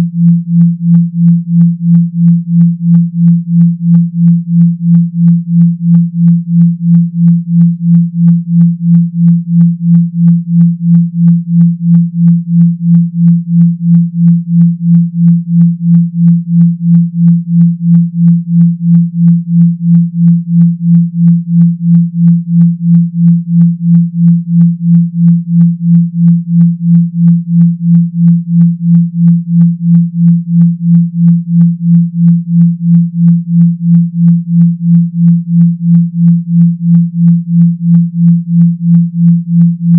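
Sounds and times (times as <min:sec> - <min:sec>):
pulsing synthesised humming tone: 0:00.0 - 0:19.0.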